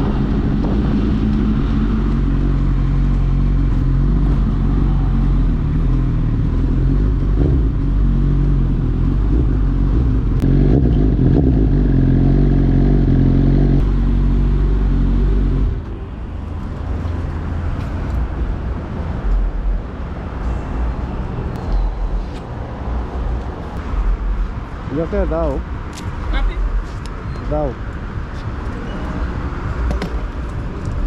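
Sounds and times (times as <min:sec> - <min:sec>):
motorcycle engine revving: 0:00.0 - 0:15.8
exhaust rumble: 0:00.0 - 0:25.6.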